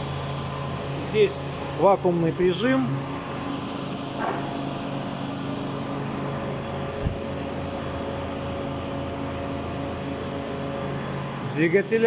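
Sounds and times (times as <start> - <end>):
vacuum pump humming: 0.0 - 12.0.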